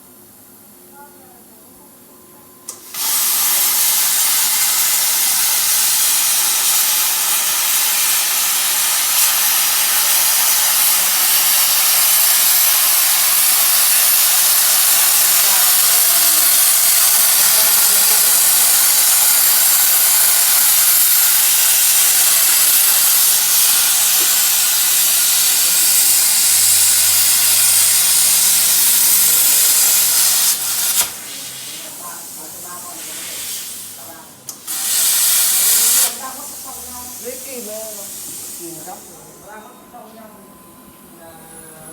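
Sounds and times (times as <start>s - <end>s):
plasma cutter hissing: 2.7s - 39.3s.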